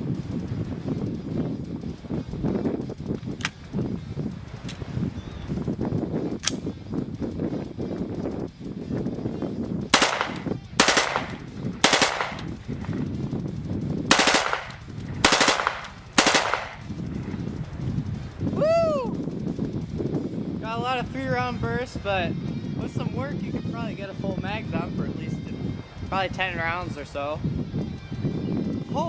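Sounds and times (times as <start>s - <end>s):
rapid gunfire bursts: 10.0s - 12.6s, 14.1s - 16.9s.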